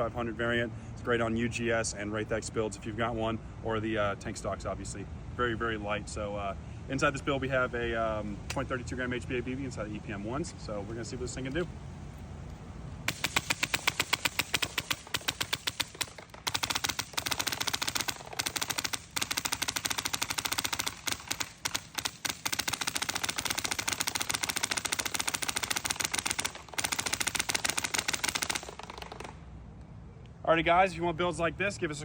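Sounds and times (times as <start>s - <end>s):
airsoft rifle firing: 13.1s - 29.4s.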